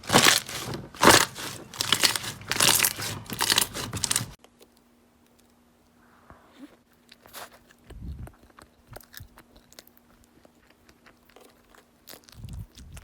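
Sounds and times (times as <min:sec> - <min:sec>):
crunchy slime crackling: 0:00.0 - 0:04.4.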